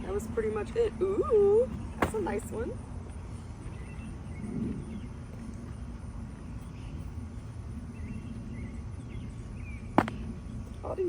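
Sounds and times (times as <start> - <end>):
low rumble: 2.7 - 10.9.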